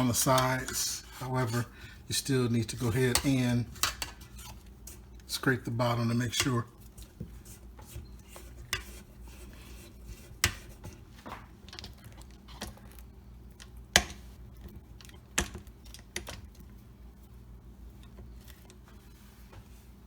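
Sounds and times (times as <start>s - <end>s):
spatula scraping mixer bowl: 0.0s - 11.1s.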